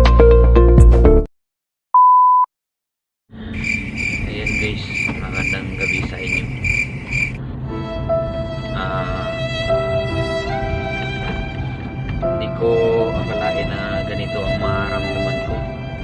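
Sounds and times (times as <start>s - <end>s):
music: 0.0s - 1.3s, 7.4s - 16.0s
short steady beep: 2.0s - 2.5s
crickets chirping: 3.4s - 7.4s.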